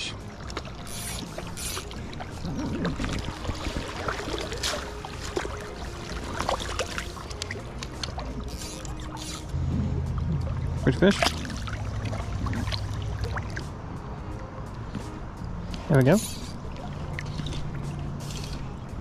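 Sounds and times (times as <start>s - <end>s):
river water rushing: 0.0s - 14.0s
fish splashing: 0.4s - 13.7s, 16.3s - 18.8s.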